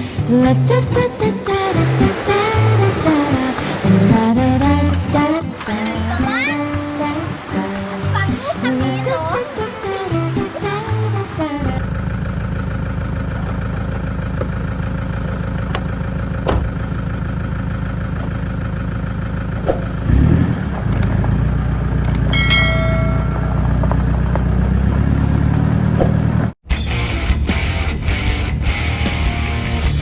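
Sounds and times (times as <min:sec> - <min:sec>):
vehicle engine running: 0:00.0 - 0:30.0
short bell-like ring: 0:22.3 - 0:23.9.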